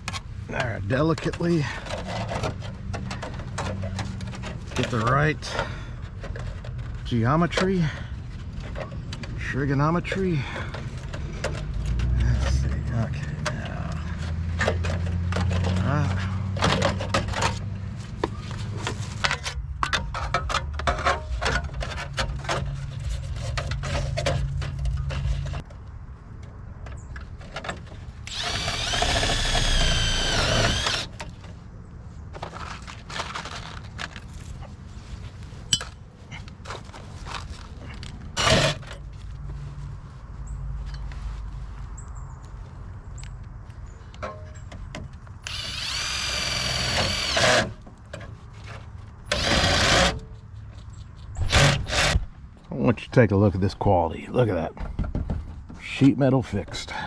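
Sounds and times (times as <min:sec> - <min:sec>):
cordless drill motor whine: 0:28.3 - 0:31.2, 0:45.4 - 0:47.6.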